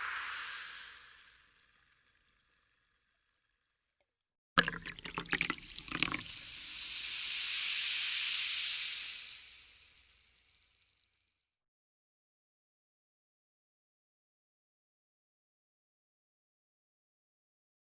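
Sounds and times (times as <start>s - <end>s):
water pouring: 0.0s - 3.6s, 4.6s - 11.1s.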